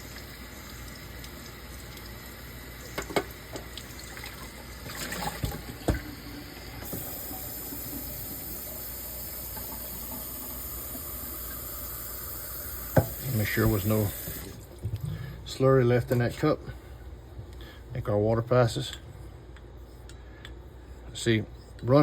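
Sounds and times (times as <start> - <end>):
water running: 0.0 - 16.6.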